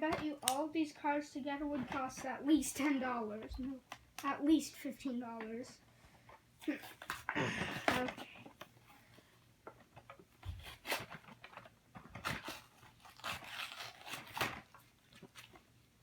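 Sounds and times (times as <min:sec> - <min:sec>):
plastic packaging being torn open: 0:10.4 - 0:15.6.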